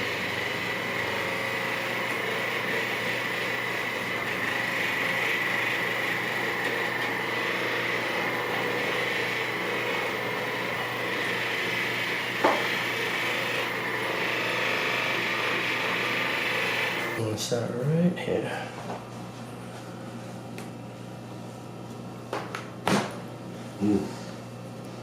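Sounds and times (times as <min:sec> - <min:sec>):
massage gun motor hum: 0:00.0 - 0:17.2.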